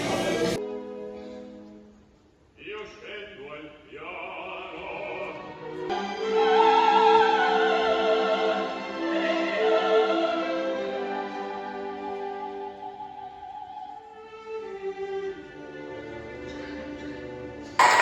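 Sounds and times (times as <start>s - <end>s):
operatic singing with orchestra: 6.1s - 11.6s.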